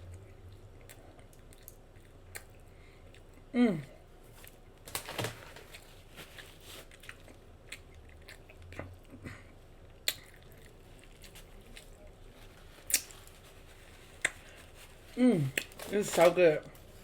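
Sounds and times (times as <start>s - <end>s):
soft chewing: 0.0s - 4.8s, 5.6s - 17.0s
wet lip smacks and clicks: 10.0s - 10.6s.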